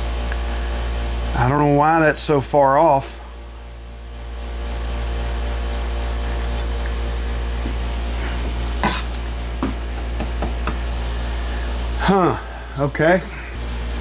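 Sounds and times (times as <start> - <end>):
steady low hum: 0.0 - 14.0
wooden parts knocking: 9.1 - 10.9.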